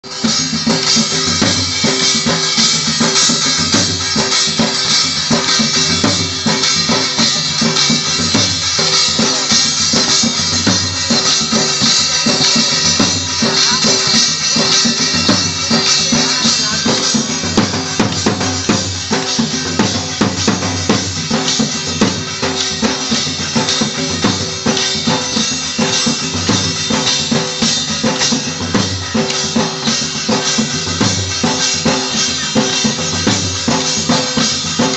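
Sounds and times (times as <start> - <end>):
loud dance music with drums: 0.0 - 34.9.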